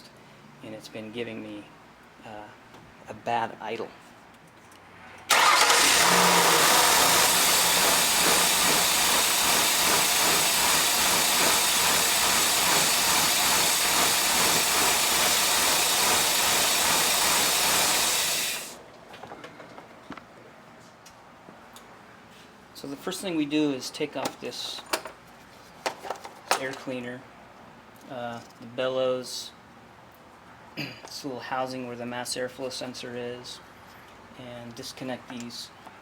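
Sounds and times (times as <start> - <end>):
engine idling: 5.3 - 18.8.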